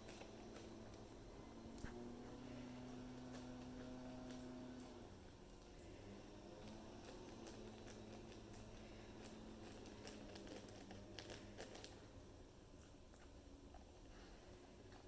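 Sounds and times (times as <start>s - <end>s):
low steady hum: 0.0s - 15.0s
plastic crinkling: 5.5s - 12.2s.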